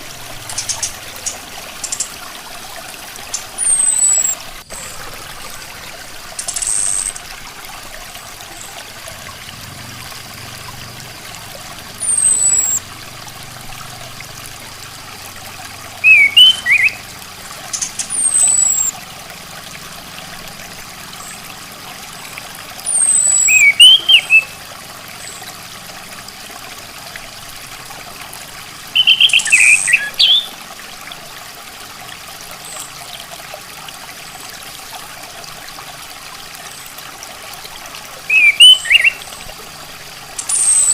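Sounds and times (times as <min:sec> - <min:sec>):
thrush calling: 0:00.0 - 0:02.2, 0:03.2 - 0:05.7, 0:12.0 - 0:12.8, 0:16.0 - 0:17.0, 0:17.7 - 0:18.9, 0:22.9 - 0:24.6, 0:28.9 - 0:30.6, 0:38.3 - 0:39.3, 0:40.4 - 0:40.9
trickling water: 0:00.0 - 0:40.9.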